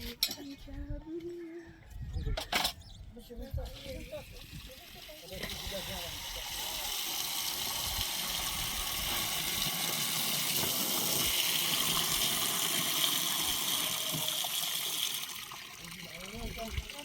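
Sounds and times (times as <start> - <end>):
running water rushing: 3.9 - 17.0.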